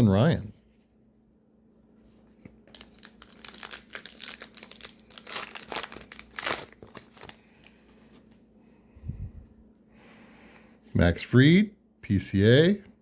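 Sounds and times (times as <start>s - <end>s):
wrapper tearing and crinkling: 2.6s - 7.4s.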